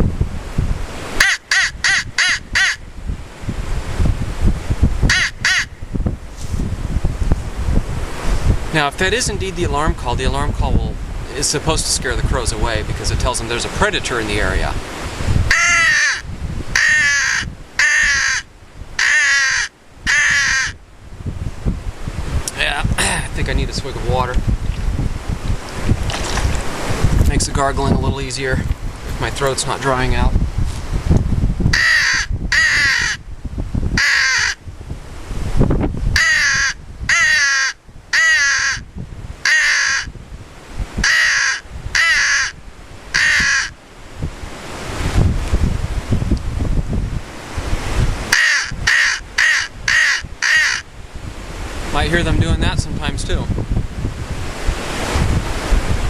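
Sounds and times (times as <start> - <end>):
low wind rumble: 0.0 - 56.0
crow call gargled caws: 1.2 - 2.8, 5.1 - 5.7, 15.5 - 20.8, 31.7 - 33.2, 34.0 - 34.6, 36.2 - 40.1, 41.0 - 43.8, 48.3 - 50.9.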